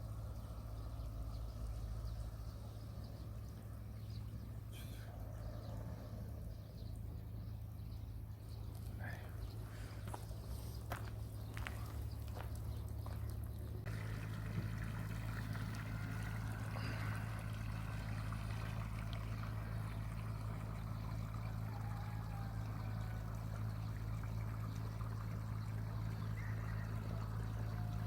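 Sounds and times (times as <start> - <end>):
steady low hum: 0.0 - 28.0
running water trickling: 8.4 - 28.0.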